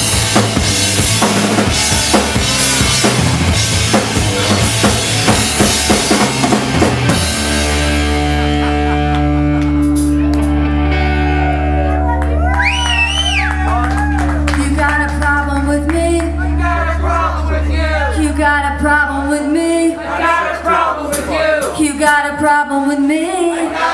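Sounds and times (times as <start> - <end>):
drum fill: 0.0 - 10.4
held chord from bass and guitars: 0.0 - 19.3
short sung or played phrases: 15.4 - 23.9.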